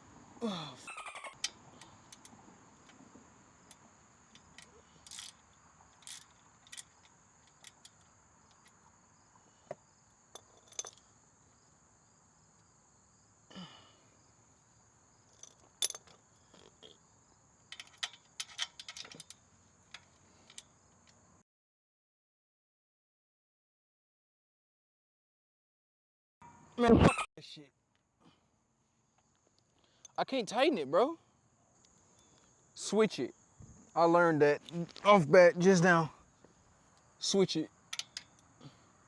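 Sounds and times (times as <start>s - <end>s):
metallic clicks of hand tools: 4.4s - 8.8s, 17.7s - 21.2s, 37.9s - 38.5s.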